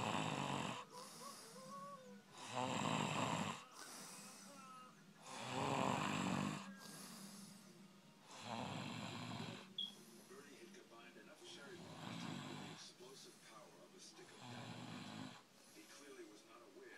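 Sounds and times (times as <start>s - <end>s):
person snoring: 0.0s - 10.3s, 11.7s - 12.8s, 14.3s - 15.4s.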